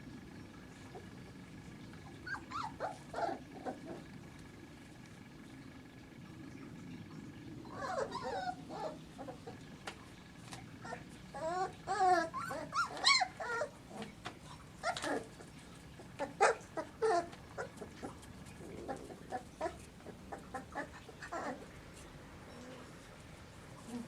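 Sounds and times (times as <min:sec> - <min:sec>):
high wavering puppy squeals: 0:02.0 - 0:04.0, 0:07.7 - 0:09.5, 0:10.8 - 0:15.4, 0:16.2 - 0:18.1, 0:18.9 - 0:21.8
puppies whimpering and squeaking: 0:02.0 - 0:04.1, 0:07.6 - 0:09.7, 0:10.7 - 0:23.2.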